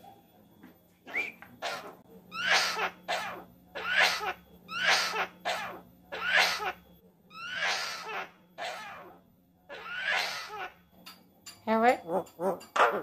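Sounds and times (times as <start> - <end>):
bird mimicking coughing: 1.6 - 6.8, 7.4 - 9.1, 9.7 - 10.8.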